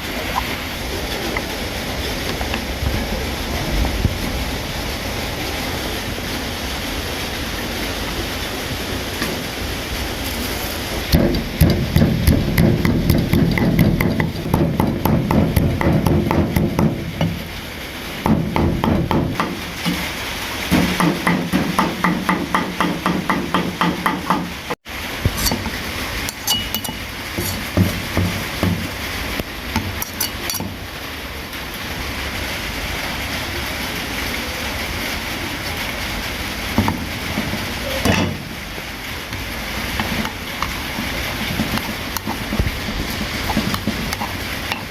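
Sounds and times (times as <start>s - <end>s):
rapid repeated knocks: 11.1s - 17.4s, 18.2s - 20.1s, 20.7s - 24.7s, 27.4s - 28.9s.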